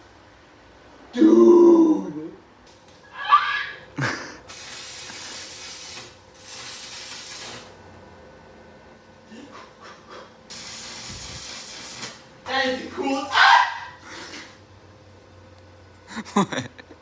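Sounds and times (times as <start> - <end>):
welding arc hissing: 2.7 - 8.5, 9.6 - 14.7
welding arc striking crack: 4.4 - 7.9, 10.5 - 12.6.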